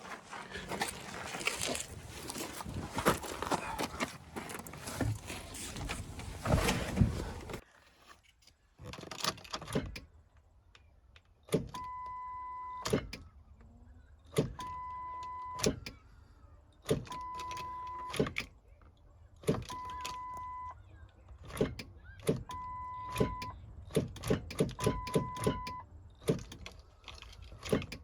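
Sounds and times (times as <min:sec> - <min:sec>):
rustling and knocking under truck: 0:00.0 - 0:07.6.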